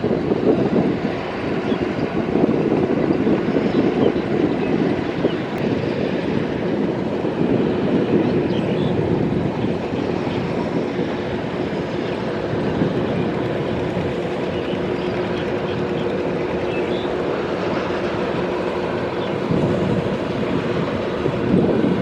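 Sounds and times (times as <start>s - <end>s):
combine harvester diesel engine: 9.0s - 22.0s.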